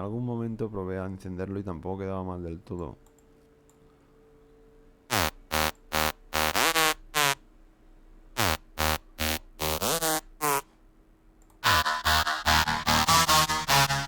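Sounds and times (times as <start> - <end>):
synthesizer stabs diving in pitch: 11.6 - 14.0.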